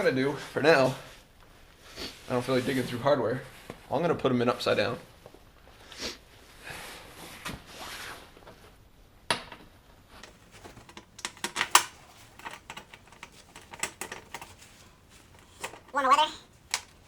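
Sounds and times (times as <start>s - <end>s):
metal screws clinking: 10.2s - 17.0s.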